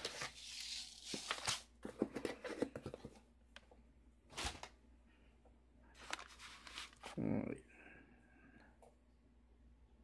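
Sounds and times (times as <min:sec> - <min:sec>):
packaging rustling: 0:06.0 - 0:07.2.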